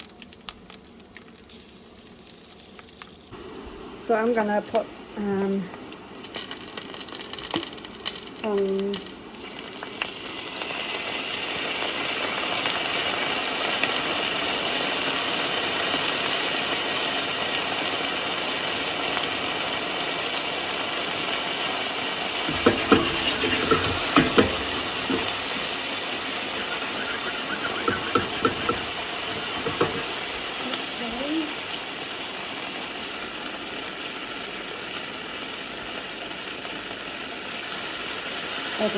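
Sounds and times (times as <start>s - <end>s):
cooking hiss: 0.0s - 38.9s
clattering knocks: 22.5s - 25.7s, 26.5s - 30.5s.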